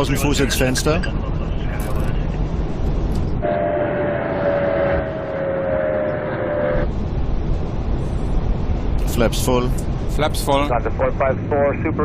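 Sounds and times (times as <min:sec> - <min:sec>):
cockpit engine and airflow rumble: 0:00.0 - 0:12.0
radio carrier whistle: 0:03.4 - 0:06.9.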